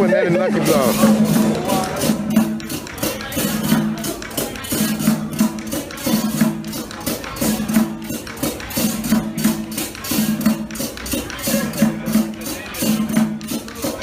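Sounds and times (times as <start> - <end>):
loud music with percussion beat: 0.0 - 14.0.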